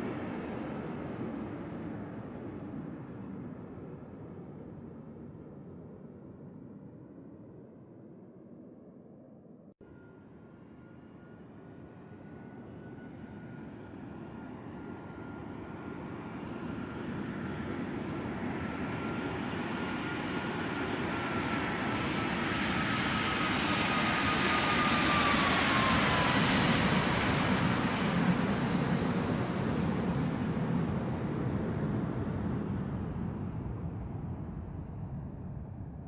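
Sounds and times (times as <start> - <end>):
jet aircraft passing overhead: 10.8 - 36.0.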